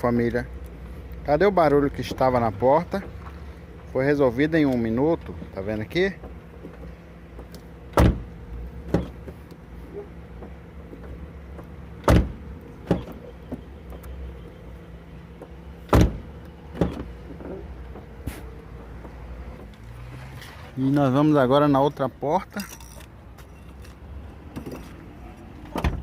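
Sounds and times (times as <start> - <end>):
car door shutting: 6.2 - 9.4, 10.3 - 14.1, 15.4 - 20.7, 25.6 - 26.0.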